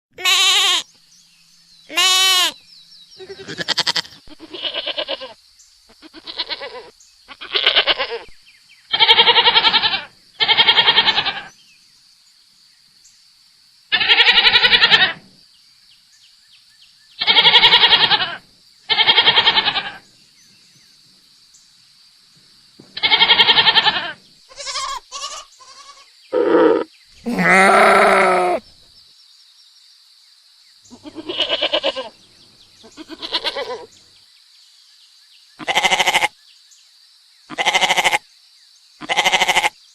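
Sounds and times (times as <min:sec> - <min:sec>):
goat bleating: 0:00.2 - 0:00.9, 0:01.9 - 0:02.6, 0:03.2 - 0:05.4, 0:06.0 - 0:08.3, 0:08.9 - 0:11.5, 0:13.9 - 0:15.2, 0:17.2 - 0:20.0, 0:23.0 - 0:28.6, 0:30.9 - 0:32.1, 0:32.9 - 0:33.9, 0:35.6 - 0:36.3, 0:37.5 - 0:38.2, 0:39.0 - 0:39.8.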